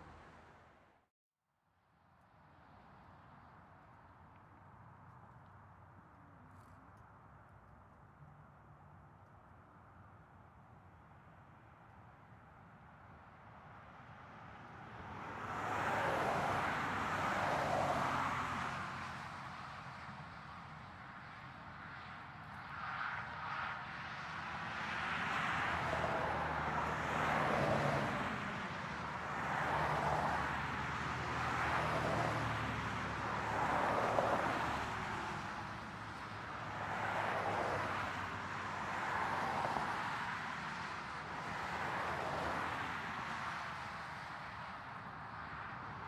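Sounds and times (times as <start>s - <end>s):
cars passing: 25.2s - 35.9s.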